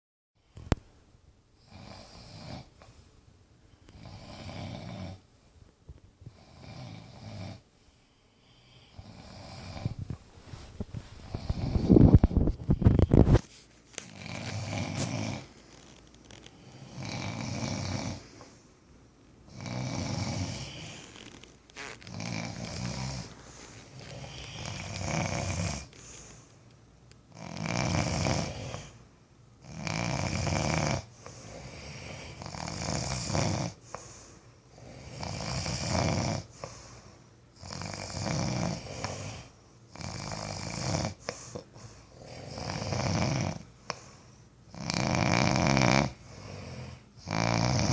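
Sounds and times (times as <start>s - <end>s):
people snoring: 3.9s - 5.2s, 8.7s - 10.0s, 11.3s - 13.2s, 14.1s - 18.5s, 19.5s - 26.3s, 27.3s - 29.0s, 29.6s - 34.1s, 34.7s - 36.8s, 37.6s - 44.0s, 44.7s - 47.9s.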